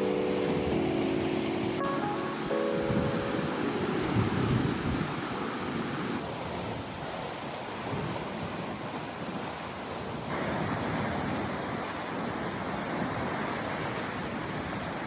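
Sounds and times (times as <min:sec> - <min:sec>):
surf washing against rocks: 0:00.0 - 0:15.0
wind buffeting microphone: 0:02.5 - 0:13.4.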